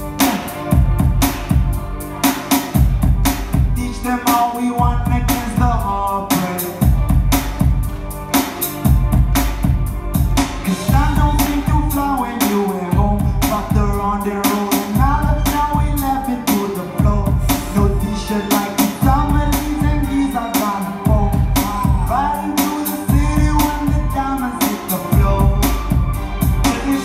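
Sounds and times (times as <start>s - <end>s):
drum beat with heavy bass: 0.0s - 27.0s
person singing: 3.7s - 7.0s, 10.6s - 27.0s.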